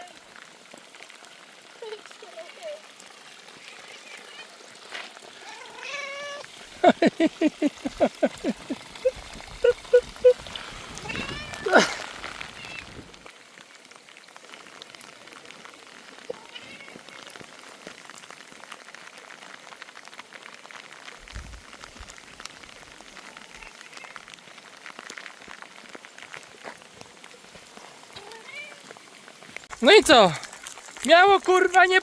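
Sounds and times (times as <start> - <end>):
rain pattering: 0.0 - 32.0
cat meowing: 5.4 - 6.5, 11.0 - 11.8.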